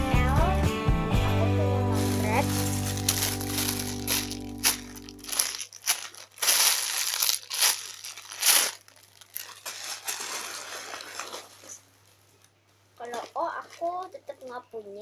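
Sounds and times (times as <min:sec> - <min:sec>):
background music: 0:00.0 - 0:05.4
crinkling and crunching handling noise: 0:01.9 - 0:15.0.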